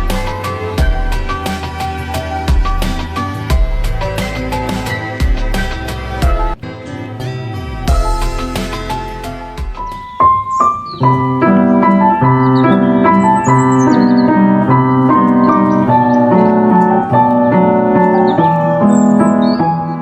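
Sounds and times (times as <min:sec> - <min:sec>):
piano music: 0:00.0 - 0:20.0.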